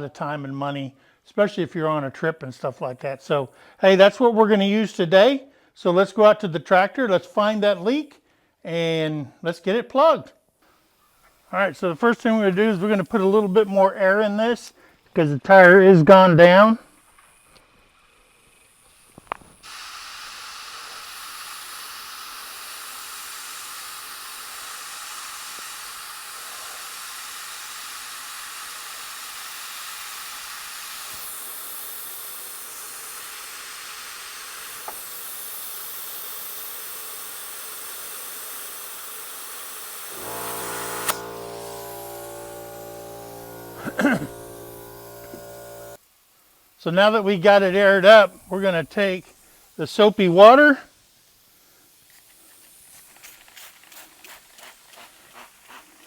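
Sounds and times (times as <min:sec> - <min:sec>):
compressed air hissing: 0:10.7 - 0:15.2, 0:18.5 - 0:56.0
buzzing hum: 0:40.1 - 0:46.0.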